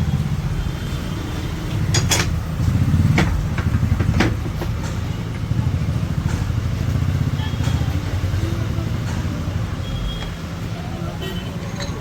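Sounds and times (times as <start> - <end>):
sharp clicks and knocks: 1.7 - 5.5.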